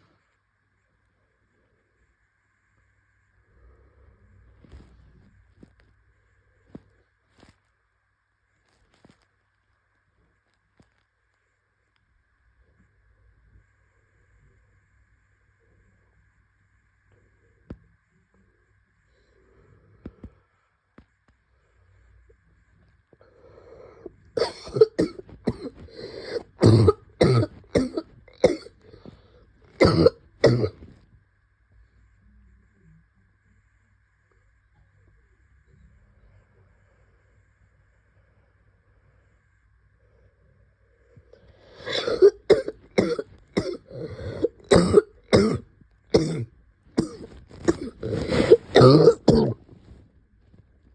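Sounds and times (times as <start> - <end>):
throat clearing: 24.4 - 29.0, 29.8 - 30.9, 41.8 - 49.6
person coughing: 24.4 - 29.1, 29.8 - 30.9, 41.8 - 45.6, 46.2 - 49.6.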